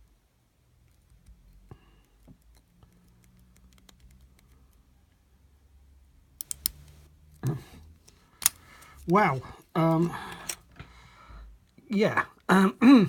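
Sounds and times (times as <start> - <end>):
lock pick ticks and scrapes: 0.9 - 4.7, 6.4 - 7.0, 8.4 - 9.1
padlock snapping open: 6.4 - 6.8, 8.4 - 9.0
padlock clicks: 6.4 - 6.9.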